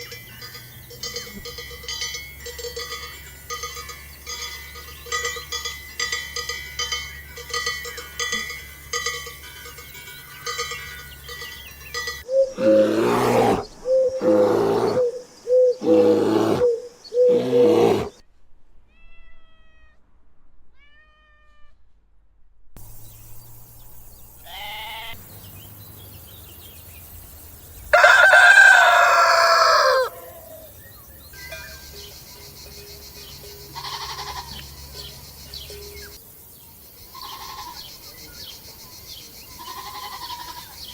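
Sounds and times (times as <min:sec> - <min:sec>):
farm animals calling: 0:00.0 - 0:18.2, 0:24.4 - 0:25.7, 0:27.8 - 0:36.2, 0:37.0 - 0:40.9.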